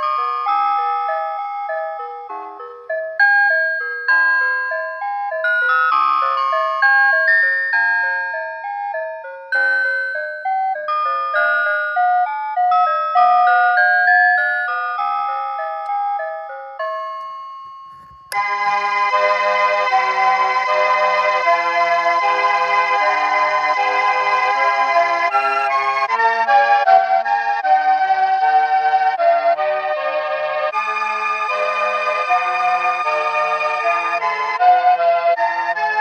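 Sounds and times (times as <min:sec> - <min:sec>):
electronic alarm melody: 0:00.0 - 0:36.0.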